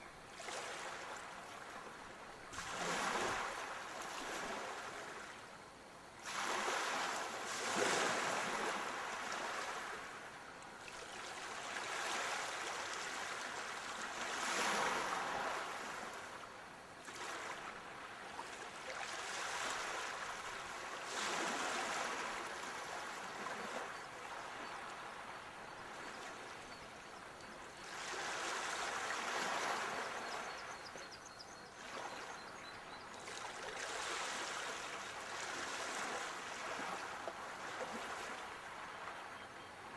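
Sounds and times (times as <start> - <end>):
sea waves breaking on shore: 0.4 - 5.5, 6.2 - 31.0, 31.8 - 39.9.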